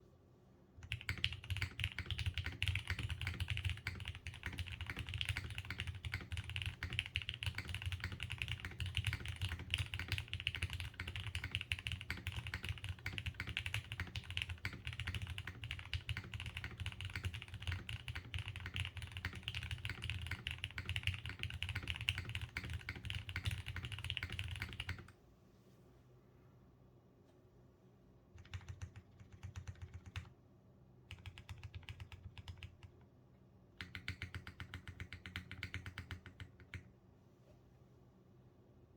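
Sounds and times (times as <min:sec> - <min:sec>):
typing on mechanical keyboard: 0:00.8 - 0:25.1, 0:28.4 - 0:30.3, 0:31.1 - 0:33.0, 0:33.8 - 0:36.9.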